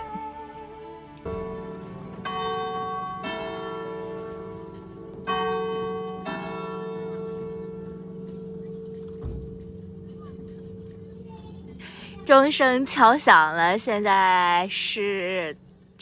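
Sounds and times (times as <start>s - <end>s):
church bell strokes: 0.0s - 9.2s.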